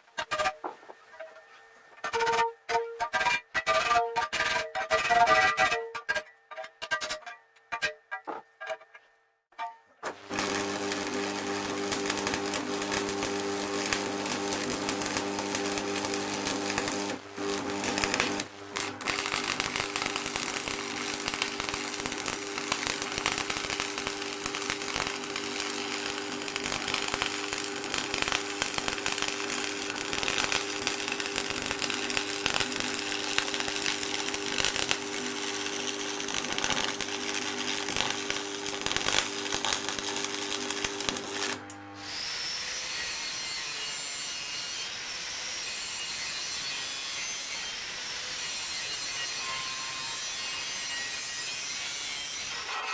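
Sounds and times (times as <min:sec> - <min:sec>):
power tool grinding: 0:10.2 - 0:43.1, 0:48.5 - 0:52.9.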